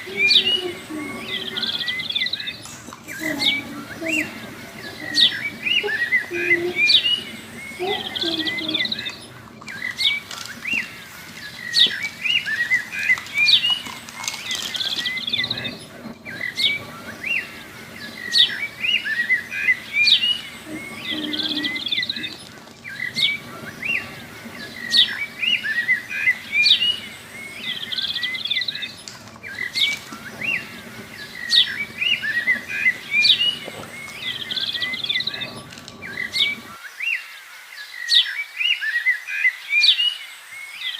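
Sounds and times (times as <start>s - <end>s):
small birds chirping: 0.0s - 37.2s.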